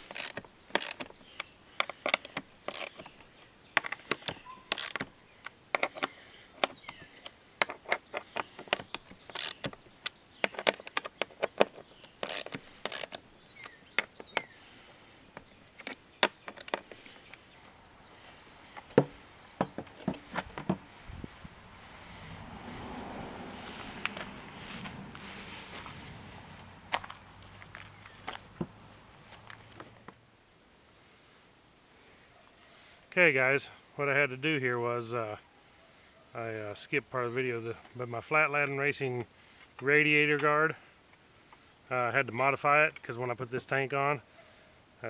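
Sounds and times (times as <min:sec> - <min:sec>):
hand tools clicking on metal: 0:00.0 - 0:14.5
soft steady rushing noise: 0:00.0 - 0:44.7.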